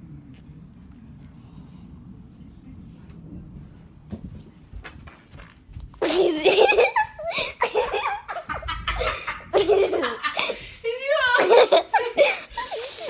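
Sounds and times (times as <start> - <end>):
loud hearty laughter: 6.2 - 13.0.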